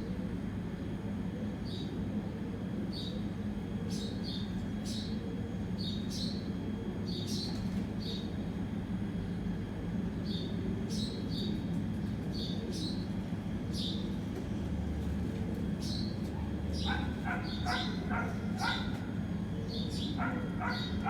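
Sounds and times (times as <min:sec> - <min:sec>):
steady low hum: 0:00.0 - 0:21.0
baby birds chirping: 0:15.8 - 0:19.0, 0:19.9 - 0:21.0.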